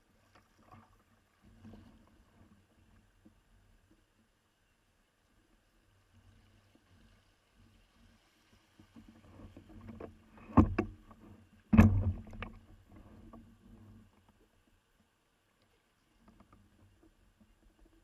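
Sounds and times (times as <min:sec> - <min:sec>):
hollow knocks on plastic kayak: 0:11.7 - 0:12.6.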